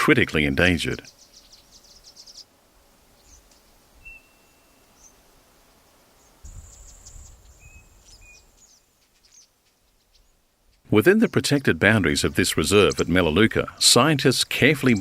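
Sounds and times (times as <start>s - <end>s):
high-pitched bird calls: 0.9s - 2.5s, 3.1s - 5.3s, 6.2s - 10.4s.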